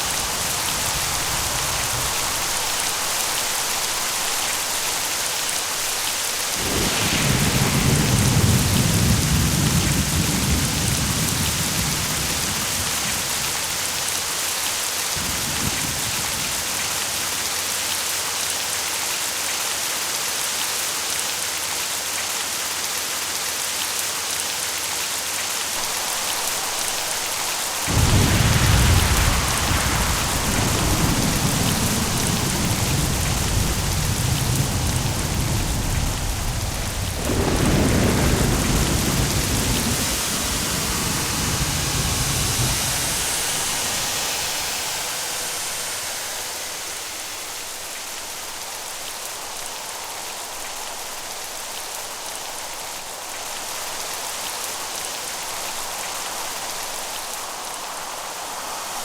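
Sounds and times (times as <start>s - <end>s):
rolling thunder: 0.0s - 14.2s, 25.8s - 47.7s
heavy rain falling: 0.0s - 59.0s.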